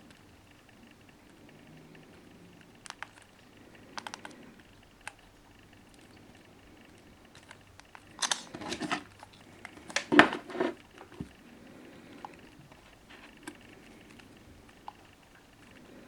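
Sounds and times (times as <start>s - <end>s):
small clicks: 0.0s - 11.4s.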